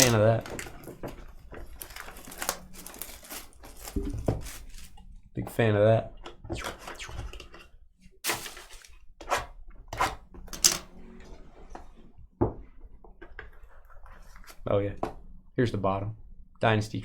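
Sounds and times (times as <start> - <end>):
cardboard box rustling: 0.0 - 5.0, 8.3 - 9.0.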